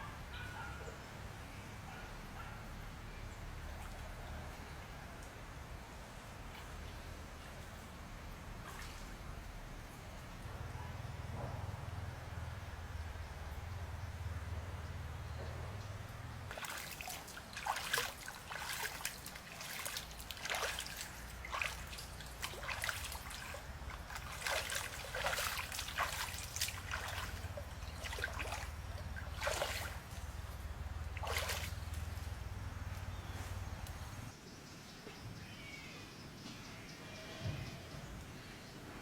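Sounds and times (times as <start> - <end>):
water splashing and trickling: 3.4 - 5.5, 6.2 - 10.4, 16.4 - 34.3
low steady rumble: 4.4 - 17.6, 21.0 - 34.4.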